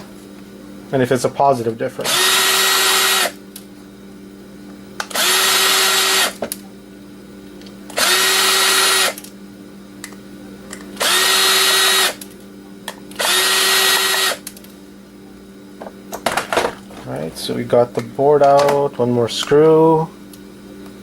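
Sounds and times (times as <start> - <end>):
power drill motor whine: 2.0 - 3.4, 5.1 - 6.4, 7.9 - 9.3, 11.0 - 12.2, 13.1 - 14.5.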